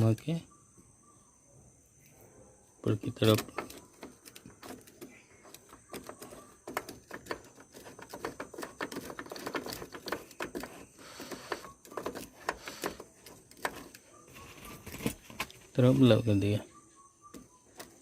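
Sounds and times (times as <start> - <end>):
small metal parts clicking: 3.3 - 14.0.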